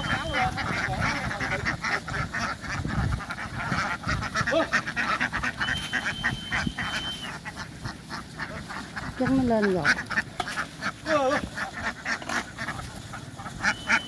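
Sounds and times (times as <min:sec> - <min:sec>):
thin high steady tone: 0:00.0 - 0:00.6
ducks quacking: 0:00.0 - 0:14.0.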